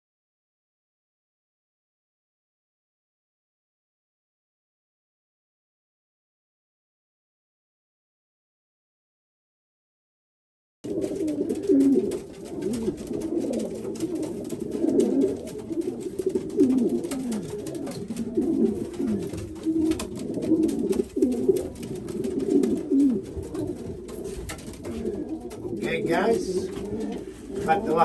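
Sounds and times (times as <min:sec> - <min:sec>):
faint clicks and taps: 0:10.9 - 0:27.7
pigeons cooing: 0:10.9 - 0:28.0.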